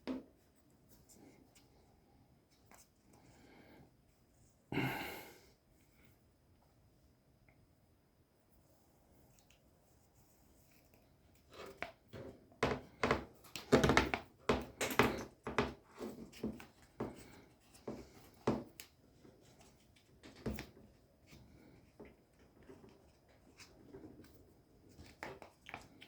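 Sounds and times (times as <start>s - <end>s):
hands knocking and rustling objects: 11.6s - 18.9s.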